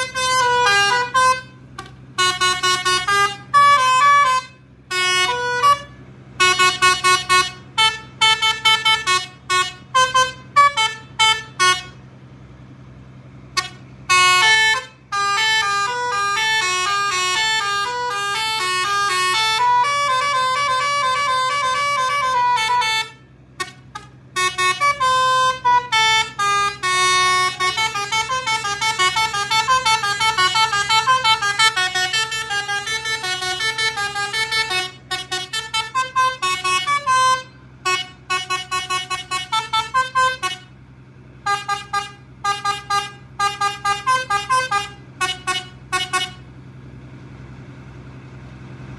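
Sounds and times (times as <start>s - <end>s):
multi-tone horn melody: 0.0s - 12.0s, 13.5s - 40.7s, 41.4s - 46.4s.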